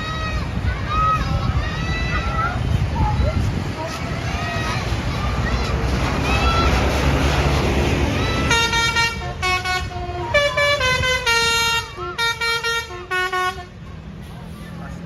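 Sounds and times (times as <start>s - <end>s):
loud rushing noise: 0.0s - 12.0s
musical bus horn playing a tune: 8.3s - 13.8s.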